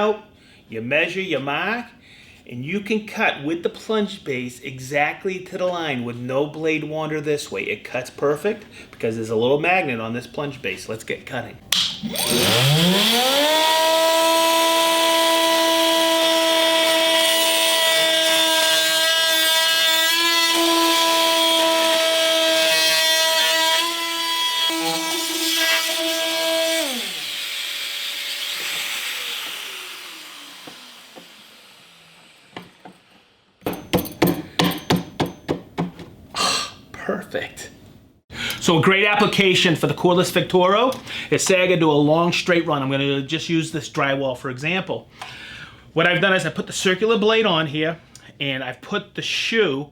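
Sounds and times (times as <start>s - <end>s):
oscillating multitool buzzing: 11.9s - 15.4s
sharp clicks and knocks: 32.6s - 36.2s.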